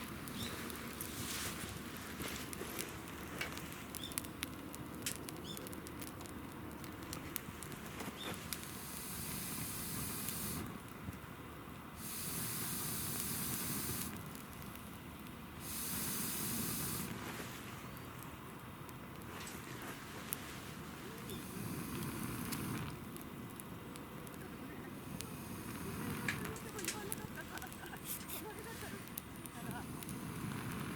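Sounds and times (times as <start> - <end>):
wood fire crackling: 0.0 - 30.9
loud hissing: 8.5 - 10.8, 11.9 - 14.3, 15.6 - 17.2, 21.0 - 23.0, 24.8 - 30.9.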